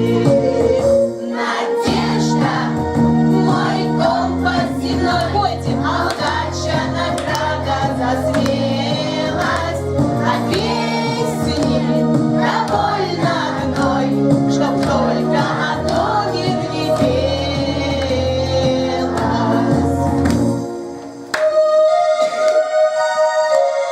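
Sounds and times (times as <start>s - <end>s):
group singing: 0.0s - 20.6s
music: 0.0s - 23.9s
children singing: 1.2s - 20.1s.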